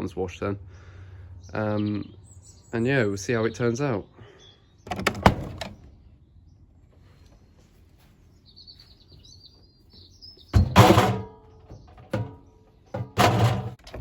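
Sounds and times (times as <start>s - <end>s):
heavy thud at washing machine: 10.5s - 11.4s.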